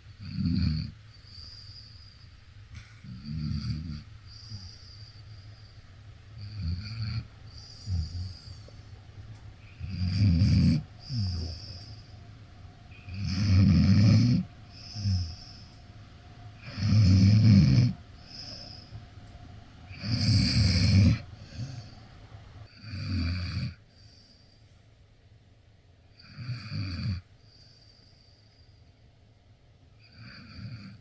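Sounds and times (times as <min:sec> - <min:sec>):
dog snoring: 0:00.2 - 0:02.1, 0:02.8 - 0:05.7, 0:06.4 - 0:08.9, 0:09.6 - 0:12.2, 0:12.9 - 0:15.8, 0:16.6 - 0:19.0, 0:19.9 - 0:22.0, 0:22.7 - 0:24.2, 0:26.2 - 0:27.3, 0:30.0 - 0:31.0
dog breathing softly: 0:01.1 - 0:12.3, 0:12.9 - 0:16.0, 0:16.6 - 0:22.2.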